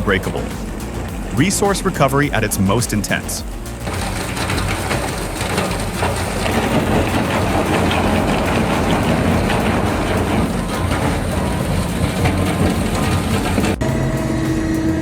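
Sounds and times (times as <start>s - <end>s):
low machine hum: 0.0s - 15.0s
shredder crunching material: 3.8s - 13.8s.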